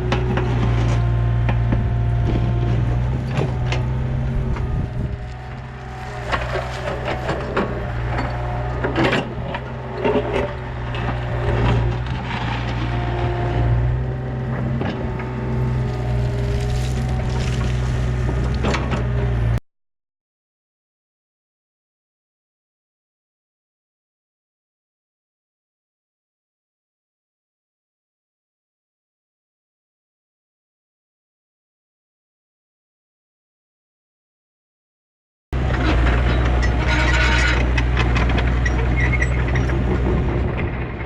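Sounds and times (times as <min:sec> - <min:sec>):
diesel engine running: 0:00.0 - 0:19.6, 0:35.6 - 0:41.0
hydraulic whine: 0:00.3 - 0:19.6, 0:35.6 - 0:41.0.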